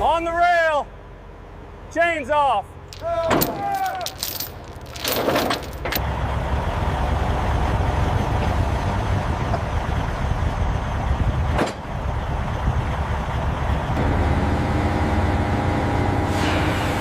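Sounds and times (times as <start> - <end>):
heavy vehicle engine running: 4.5 - 17.0.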